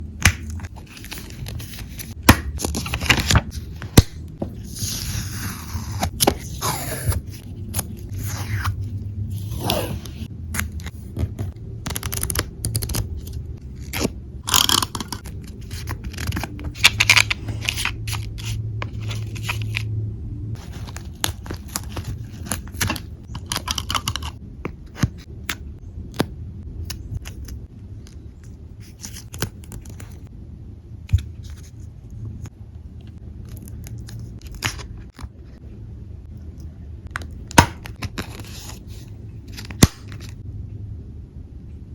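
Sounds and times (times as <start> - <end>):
paper rustling and crinkling: 0.5 - 19.8, 20.6 - 24.3.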